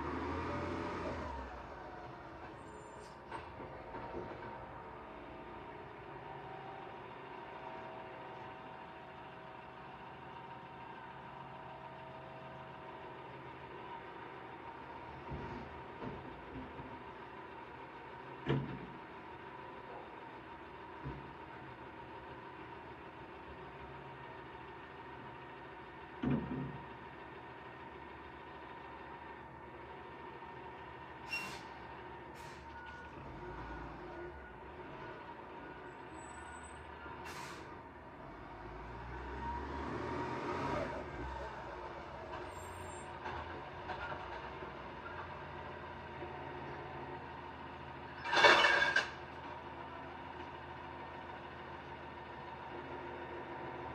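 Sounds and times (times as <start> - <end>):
truck engine idling: 0.0 - 18.4
truck idling: 0.0 - 48.4.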